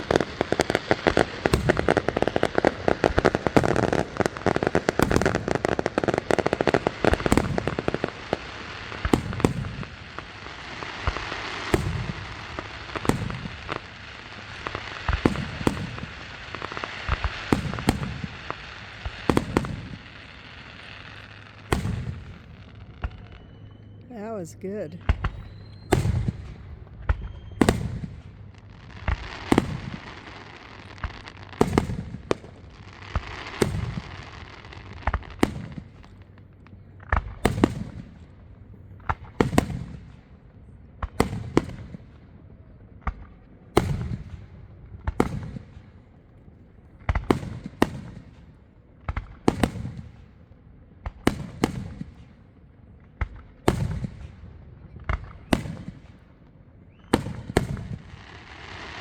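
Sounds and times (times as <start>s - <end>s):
firework crackling: 0.0s - 22.8s.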